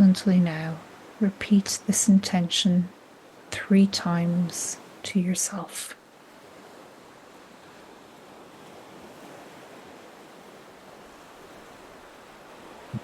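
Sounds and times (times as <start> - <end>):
gentle ocean waves on shore: 0.0 - 13.0.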